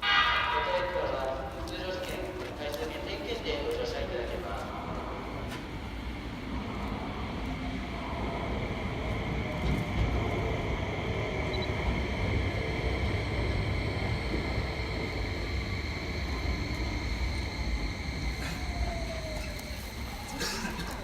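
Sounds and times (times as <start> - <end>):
train rumble: 0.0 - 21.0
high electrical whine: 9.6 - 21.0.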